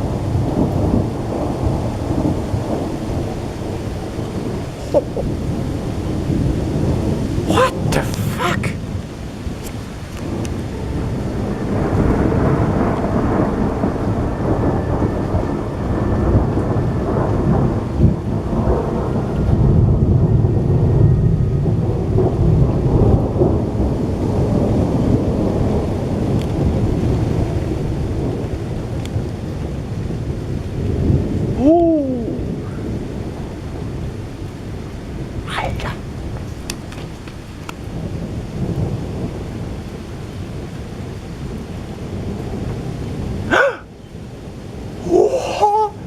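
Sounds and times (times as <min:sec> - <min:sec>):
thunder rolling and rumbling: 0:00.0 - 0:08.1, 0:08.7 - 0:45.3.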